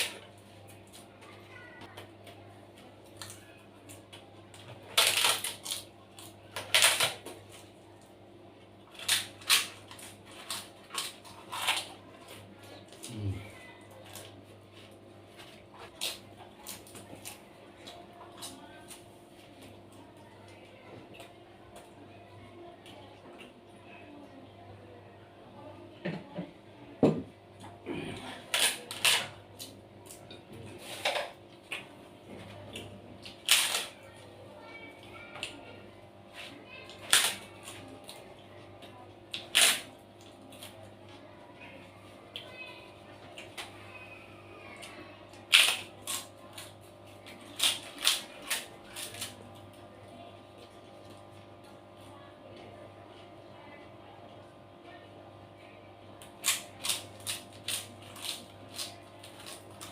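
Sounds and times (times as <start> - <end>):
crunchy fried food chewing: 56.2 - 59.9.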